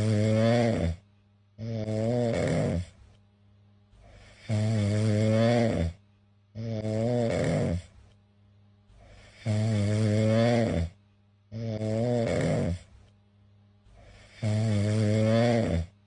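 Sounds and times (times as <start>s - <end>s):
cat snoring: 0.0s - 1.0s, 1.6s - 3.1s, 4.0s - 6.0s, 6.6s - 8.0s, 9.0s - 13.0s, 13.9s - 16.0s.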